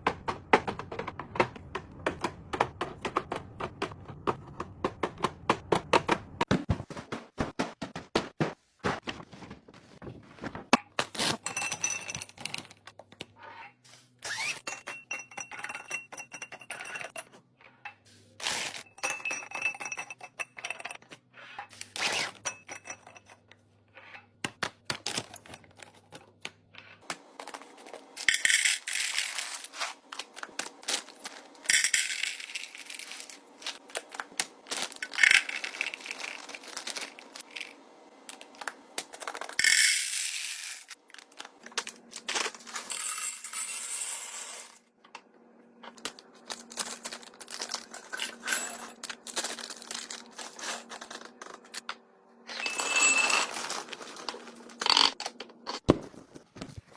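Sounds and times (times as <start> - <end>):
beads clattering into containers: 27.2 - 44.9, 46.4 - 51.8, 52.5 - 55.1.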